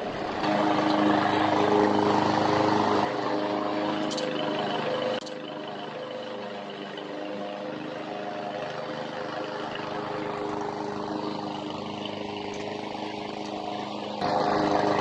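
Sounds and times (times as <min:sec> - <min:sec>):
lawn mower engine running: 0:00.0 - 0:15.0.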